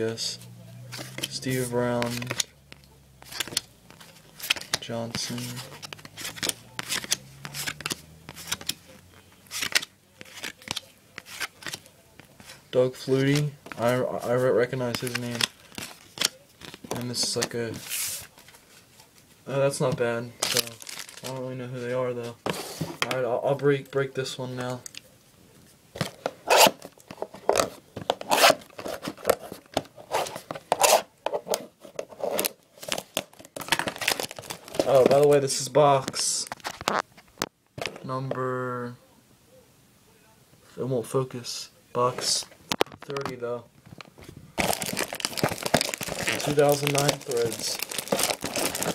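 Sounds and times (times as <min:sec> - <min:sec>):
cards flicking and rustling: 0:00.9 - 0:19.2, 0:42.2 - 0:48.9
plastic wrapping ripping: 0:20.4 - 0:21.4, 0:32.3 - 0:35.2, 0:44.6 - 0:48.9.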